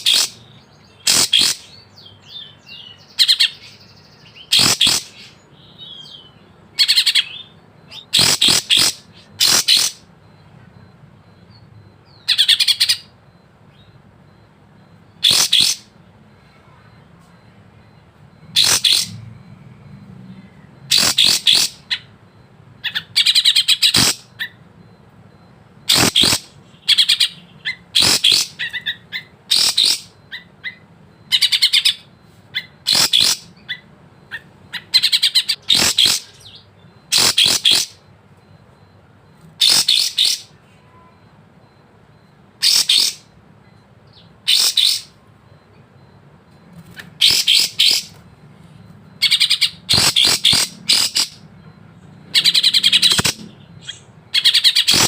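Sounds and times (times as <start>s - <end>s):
bird singing high phrases: 0.0s - 55.0s.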